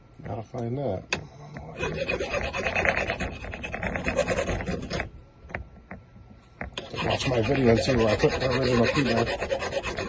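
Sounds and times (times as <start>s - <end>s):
hand file scraping a key: 1.7s - 5.1s, 6.8s - 10.0s.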